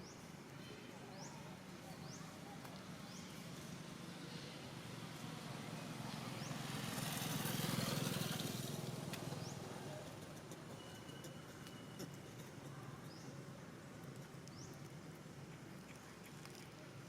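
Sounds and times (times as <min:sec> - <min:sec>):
motor vehicle passing: 0:04.2 - 0:10.0.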